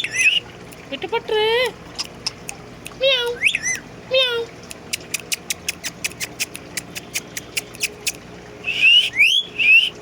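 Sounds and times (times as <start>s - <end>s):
parakeet squawks: 0.0s - 0.4s, 3.0s - 3.9s
parakeet rapid clicks: 4.7s - 8.2s.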